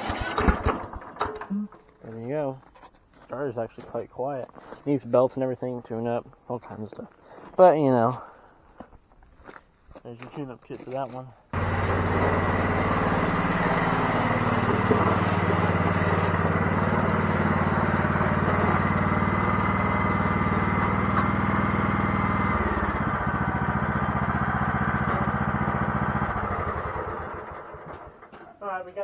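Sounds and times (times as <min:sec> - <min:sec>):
mower engine running: 0:00.0 - 0:01.5, 0:11.6 - 0:28.3.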